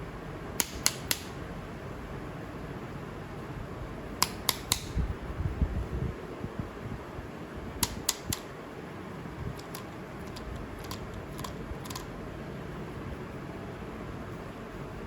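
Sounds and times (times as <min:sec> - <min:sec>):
sharp little clicks: 0:00.6 - 0:01.4, 0:04.2 - 0:05.0, 0:07.8 - 0:08.5, 0:09.5 - 0:12.1
steady low rumbling noise: 0:04.8 - 0:15.0.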